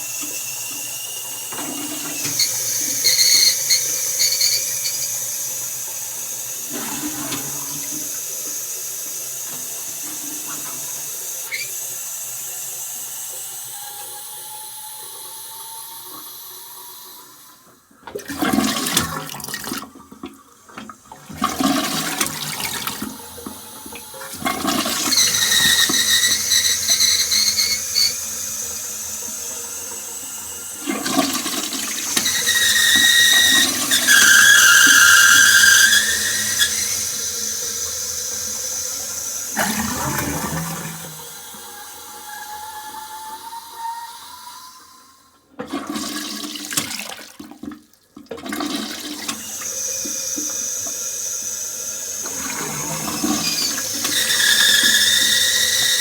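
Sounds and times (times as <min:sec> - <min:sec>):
flush clunks: 0:00.0 - 0:56.0
toilet flushing: 0:00.0 - 0:56.0
shrill whistling tone: 0:00.3 - 0:05.8, 0:11.4 - 0:17.2, 0:24.7 - 0:30.7, 0:31.8 - 0:45.3, 0:52.7 - 0:56.0.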